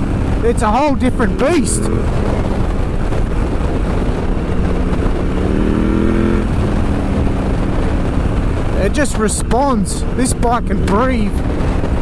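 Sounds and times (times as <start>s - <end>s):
motorcycle engine accelerating: 0.0s - 12.0s.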